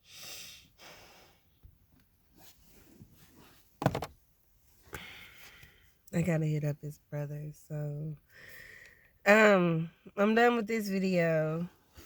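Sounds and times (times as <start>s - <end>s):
soft rustling: 2.0s - 5.8s.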